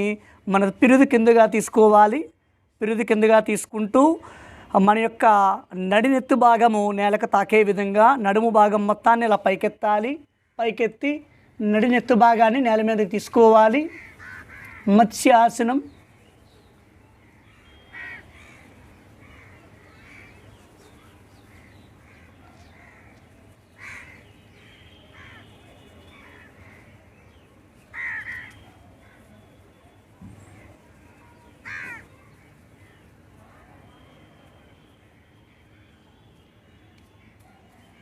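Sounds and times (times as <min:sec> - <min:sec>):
bird calling: 0:15.9 - 0:38.0.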